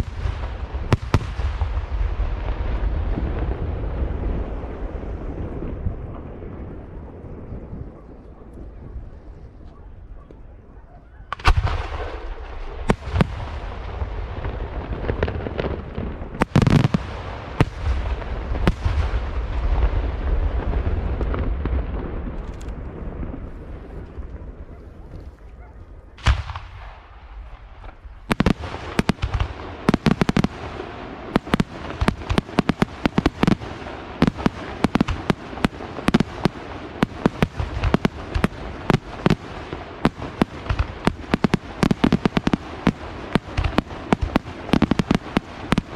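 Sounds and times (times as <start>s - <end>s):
low rumble: 0.0s - 10.9s
firework bang: 26.2s - 45.9s.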